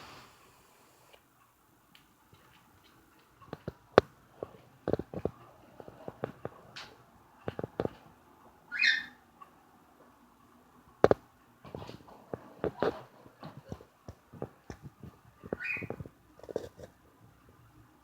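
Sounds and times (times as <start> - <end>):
irregular sharp clicks and taps: 1.9 - 5.4, 6.1 - 8.0, 11.0 - 11.3.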